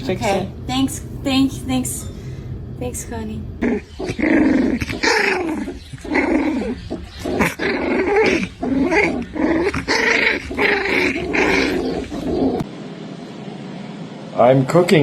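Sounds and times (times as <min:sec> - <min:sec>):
dog growling grumbles: 0:03.6 - 0:12.7.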